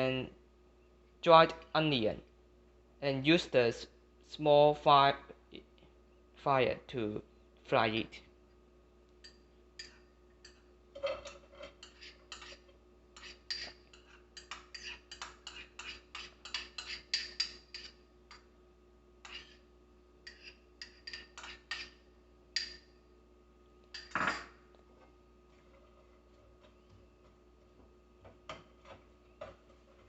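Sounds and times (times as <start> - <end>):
spatula clattering: 9.2 - 18.0, 20.2 - 22.0
spatula scraping a wok: 9.8 - 18.0, 19.2 - 22.0, 28.5 - 30.0.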